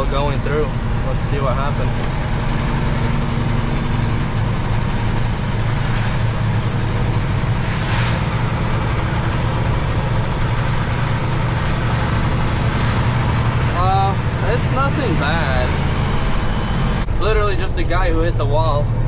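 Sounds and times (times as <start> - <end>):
diesel truck engine running: 0.0 - 19.0
road noise: 0.0 - 19.0.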